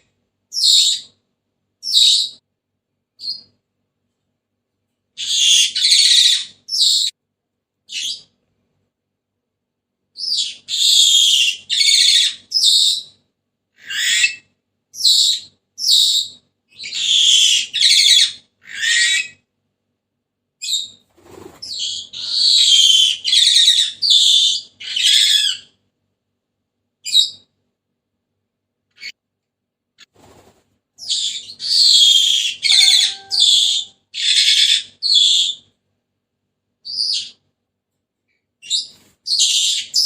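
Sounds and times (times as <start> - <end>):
parrot shrill harsh calls: 5.2 - 7.1, 10.3 - 13.1, 13.8 - 19.4, 21.9 - 25.7, 31.1 - 35.6.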